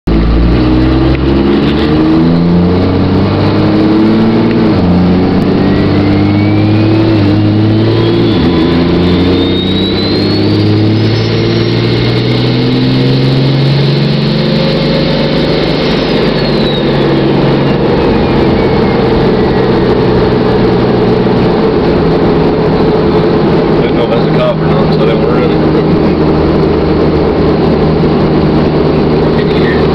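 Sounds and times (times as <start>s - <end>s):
diesel truck accelerating: 0.1s - 29.9s
turbo whistle: 5.5s - 12.4s, 15.0s - 21.0s.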